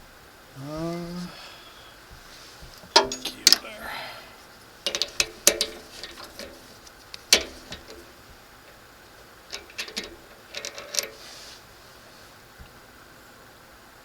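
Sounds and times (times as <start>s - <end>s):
metal parts and tools clinking: 3.0s - 3.6s, 9.5s - 11.2s.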